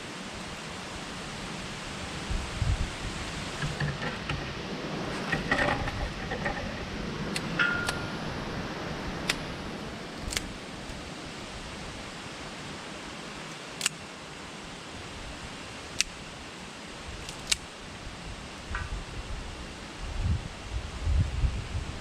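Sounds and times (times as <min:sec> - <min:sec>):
wind hissing: 0:00.0 - 0:22.0
campfire crackling: 0:02.0 - 0:14.3.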